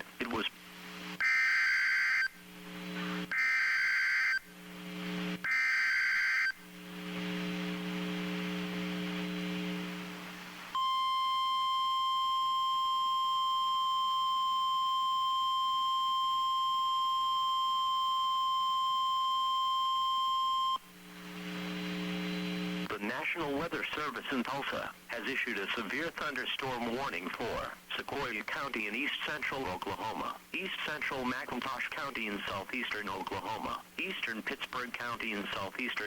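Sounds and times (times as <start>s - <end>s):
low receiver hum: 0.0s - 36.0s
steady warning alarm tone: 1.2s - 2.4s, 3.2s - 4.5s, 5.4s - 6.6s, 10.8s - 20.8s.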